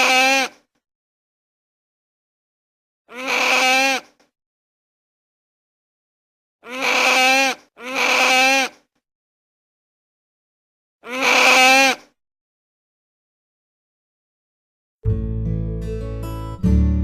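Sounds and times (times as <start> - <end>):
sea otter wavering cries: 0.0 - 0.5, 3.1 - 4.0, 6.6 - 8.7, 11.0 - 12.0.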